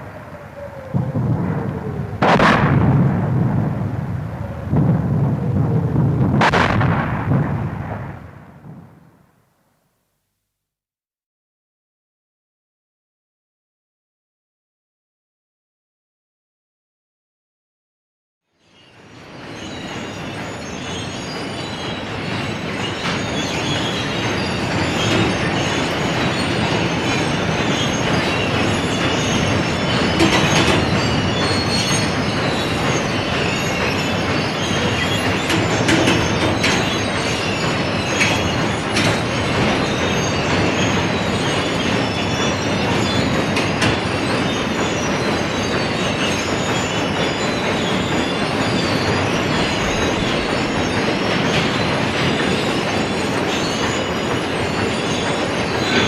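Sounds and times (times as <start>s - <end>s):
train wheels rumbling on track: 0.0s - 9.2s, 18.6s - 56.0s
high wheel squeals: 18.6s - 56.0s.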